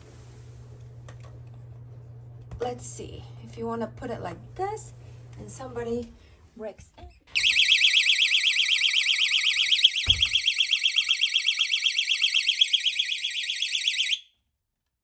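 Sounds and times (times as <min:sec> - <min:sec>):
high-pitched electronic alarm warbling: 0:07.4 - 0:14.2
dull thump: 0:10.0 - 0:10.4.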